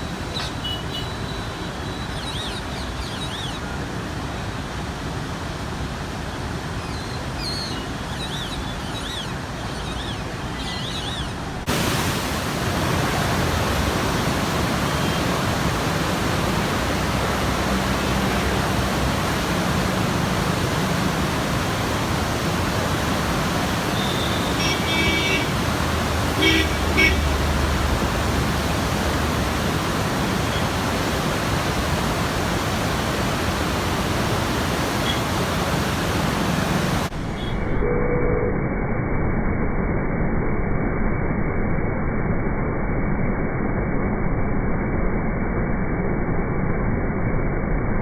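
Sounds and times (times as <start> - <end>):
floodwater rushing: 0.0 - 37.3.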